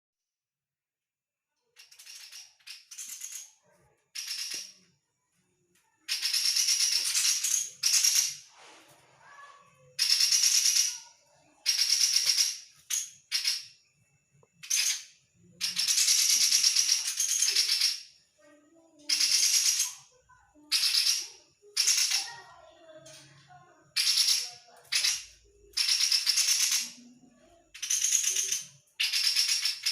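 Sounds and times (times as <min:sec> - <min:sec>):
bird harsh rattling calls: 0:01.8 - 0:04.8, 0:06.0 - 0:08.5, 0:09.3 - 0:13.8, 0:14.6 - 0:18.2, 0:19.1 - 0:20.1, 0:20.7 - 0:27.1, 0:27.7 - 0:29.9.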